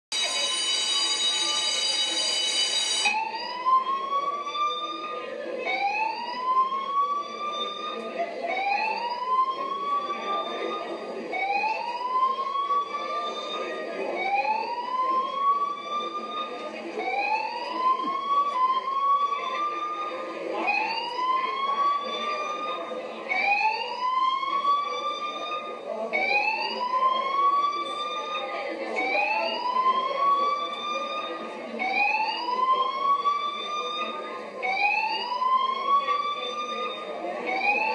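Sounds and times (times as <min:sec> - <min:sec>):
fire alarm rising whoop: 0:00.1 - 0:04.8.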